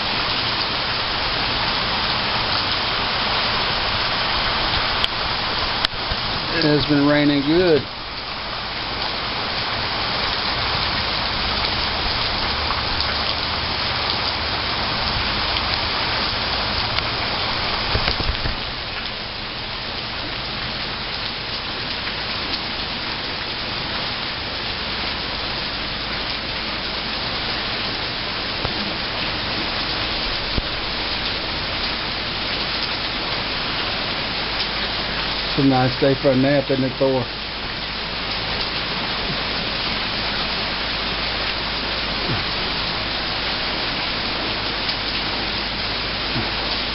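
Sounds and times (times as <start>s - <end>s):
heavy rain falling: 0.0s - 46.9s.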